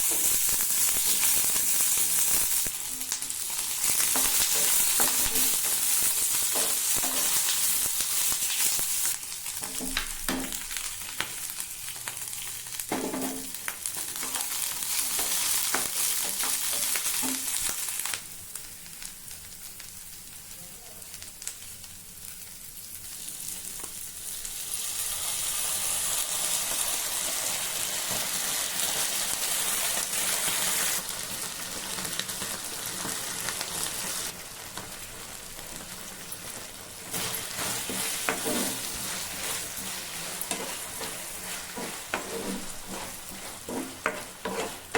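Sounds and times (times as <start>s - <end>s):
food sizzling in hot oil: 0.0s - 44.9s
spatula scraping a pan: 37.0s - 44.9s.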